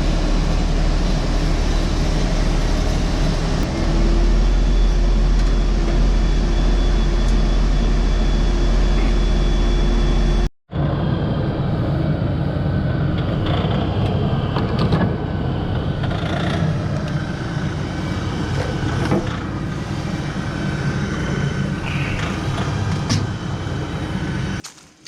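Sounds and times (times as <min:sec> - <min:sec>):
vehicle engine running: 0:00.0 - 0:24.8.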